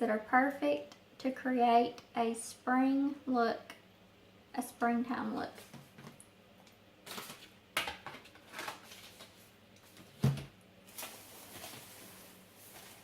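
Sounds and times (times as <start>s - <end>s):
packaging rustling: 7.1s - 7.5s, 8.2s - 10.1s, 10.9s - 13.0s.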